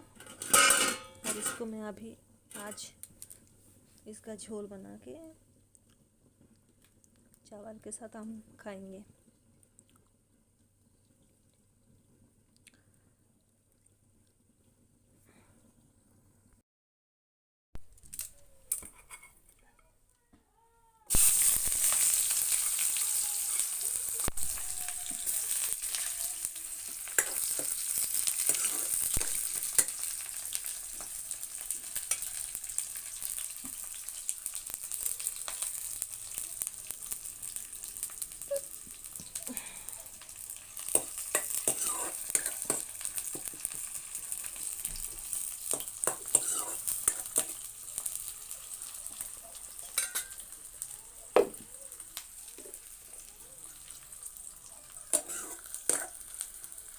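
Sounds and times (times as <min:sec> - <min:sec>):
spoon scraping a pan: 0:00.2 - 0:01.7, 0:18.8 - 0:19.8, 0:24.5 - 0:31.2, 0:40.8 - 0:43.6, 0:45.4 - 0:47.7, 0:49.8 - 0:50.4, 0:55.1 - 0:56.3
food sizzling in oil: 0:21.1 - 0:56.9.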